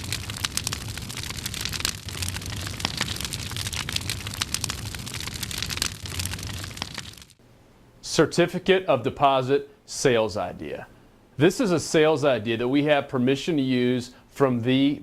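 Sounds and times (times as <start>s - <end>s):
dense crackling clicks: 0.0s - 7.4s
low steady hum: 0.0s - 15.0s.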